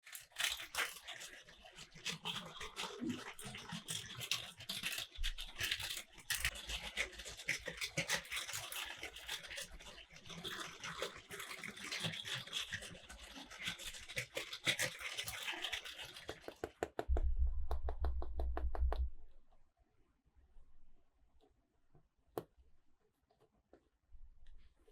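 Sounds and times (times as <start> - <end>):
toy cars clattering on track: 0.0 - 2.5, 3.2 - 16.7.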